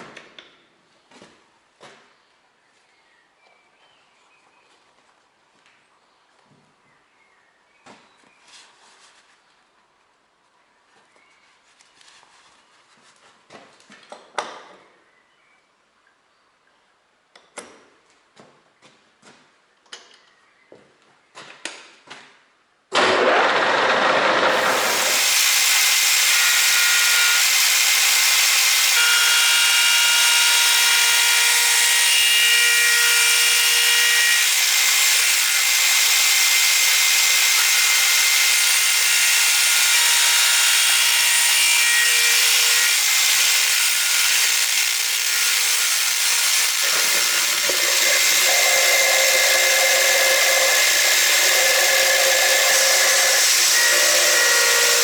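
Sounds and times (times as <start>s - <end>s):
power tool running: 23.0s - 55.0s.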